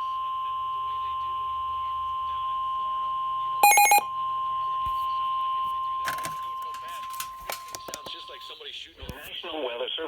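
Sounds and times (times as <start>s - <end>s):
rapid electronic beeps: 3.6s - 4.0s
steady high-pitched alarm tone: 3.6s - 4.1s.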